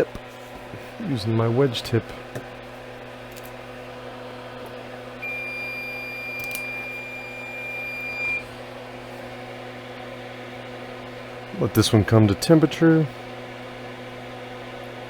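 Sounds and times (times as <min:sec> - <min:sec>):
electrical hum: 0:00.0 - 0:15.0
soldering station beep: 0:05.2 - 0:08.5.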